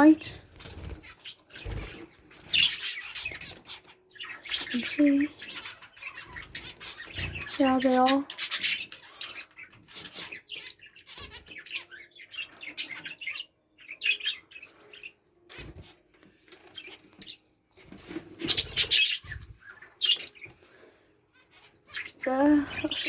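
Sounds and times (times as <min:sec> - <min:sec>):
birds chirping and calling: 0:00.0 - 0:23.0
wings flapping: 0:00.4 - 0:03.6.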